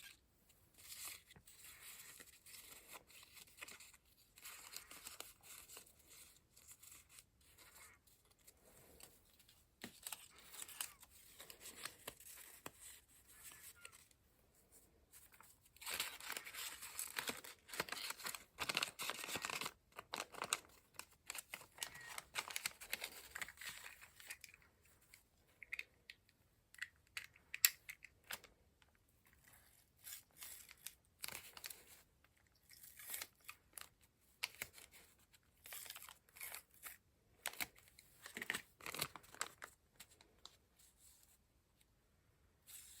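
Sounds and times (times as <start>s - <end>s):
paper tearing and rustling: 15.8s - 24.3s.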